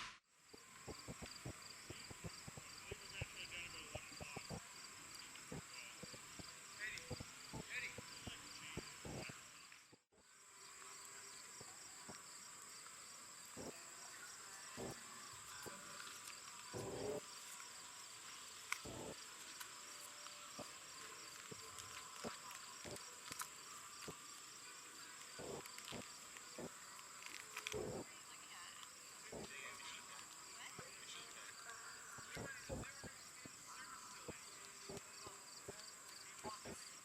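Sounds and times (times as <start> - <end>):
crickets trilling: 0.4 - 37.0
pulsing insect chirp: 0.4 - 37.0
faint distant voices: 13.0 - 17.6, 19.8 - 37.0.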